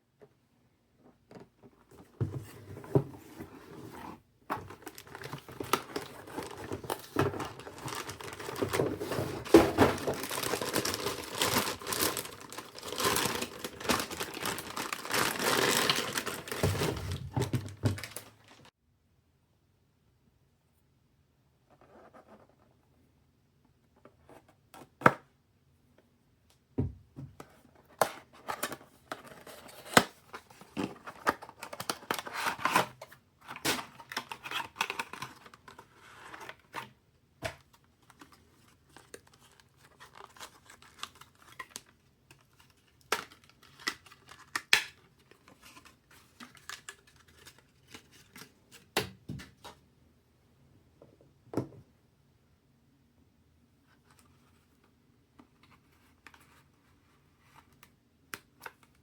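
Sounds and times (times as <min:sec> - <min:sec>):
packaging tearing and crinkling: 0:04.7 - 0:18.7.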